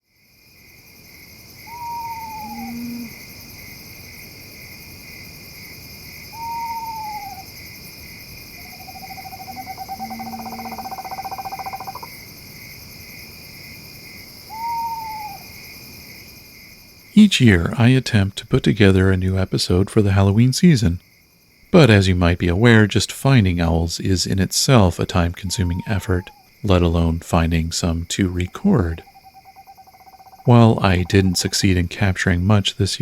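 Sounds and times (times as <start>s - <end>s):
katydids and crickets chirping: 0.0s - 33.0s
deep owl hoots: 1.6s - 3.2s, 6.3s - 7.5s, 8.6s - 12.1s, 14.5s - 15.6s, 25.4s - 26.4s
screech owl whinnies and trill: 1.6s - 3.2s, 6.3s - 7.5s, 8.6s - 12.1s, 14.5s - 15.6s, 25.5s - 26.5s.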